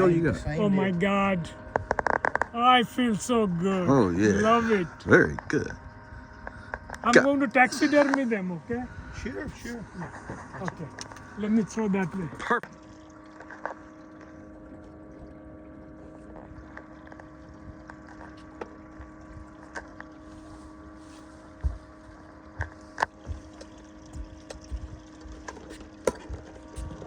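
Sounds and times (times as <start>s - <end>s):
small motor humming: 0.0s - 27.0s.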